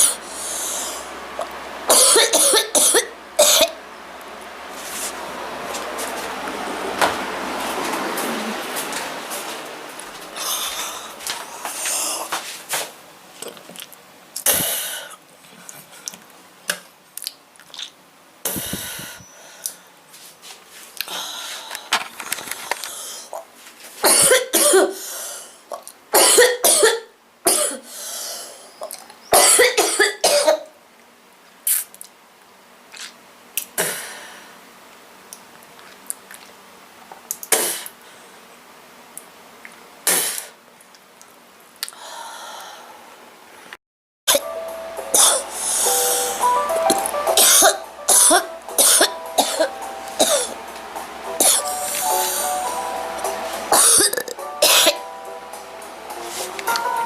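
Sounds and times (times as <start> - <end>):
girl coughing: 1.9 - 3.8, 24.0 - 25.0, 26.2 - 27.8, 29.4 - 30.7, 45.2 - 45.4, 47.4 - 50.6, 51.4 - 51.7, 53.7 - 55.0.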